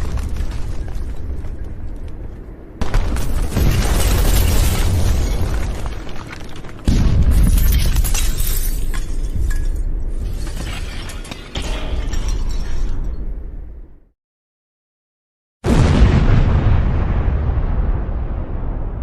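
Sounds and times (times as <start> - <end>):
deep explosion booms: 6.9 - 7.7, 15.6 - 19.0.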